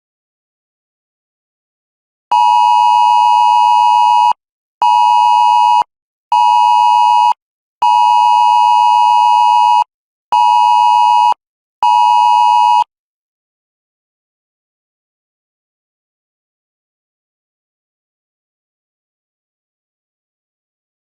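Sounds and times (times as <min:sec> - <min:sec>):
two-tone emergency alert alarm: 0:02.3 - 0:12.9.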